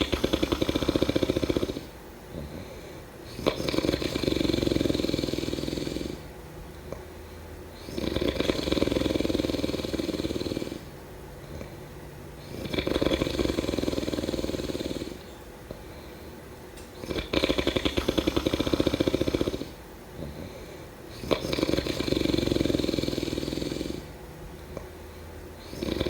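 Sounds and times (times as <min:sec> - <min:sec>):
quiet breathing: 0:00.0 - 0:03.6, 0:04.2 - 0:26.0
person snoring: 0:00.0 - 0:06.3, 0:07.8 - 0:10.9, 0:12.4 - 0:15.8, 0:17.0 - 0:24.1, 0:25.6 - 0:26.0.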